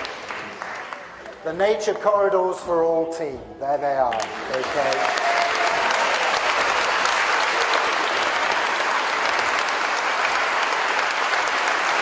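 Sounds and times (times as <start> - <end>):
audience applause: 0.0 - 1.4, 4.2 - 12.0.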